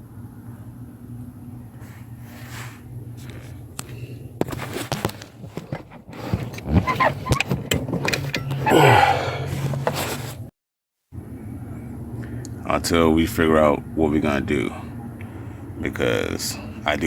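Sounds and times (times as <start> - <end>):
steady low hum: 0.0 - 6.6, 11.2 - 17.0.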